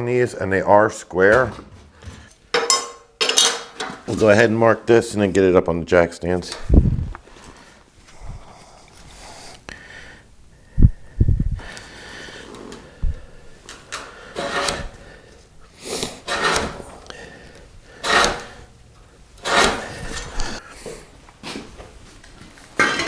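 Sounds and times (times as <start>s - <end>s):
metal stands scraping and knocking: 1.2s - 4.6s, 13.7s - 15.4s, 16.0s - 17.1s, 17.9s - 20.6s, 22.8s - 23.0s.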